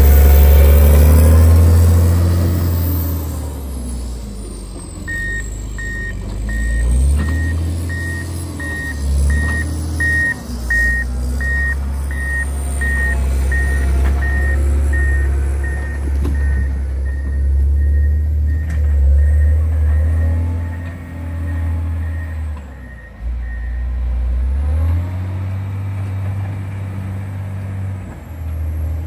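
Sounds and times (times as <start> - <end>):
diesel engine running: 0.0 - 29.0
reversing alarm beeping: 4.6 - 24.0.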